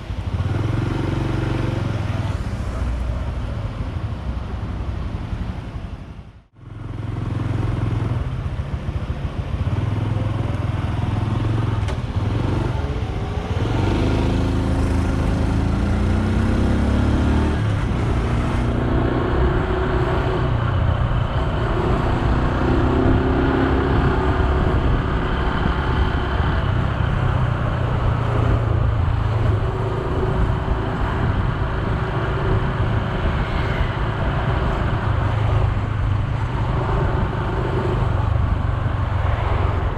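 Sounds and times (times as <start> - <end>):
road and wind noise: 0.0 - 39.9.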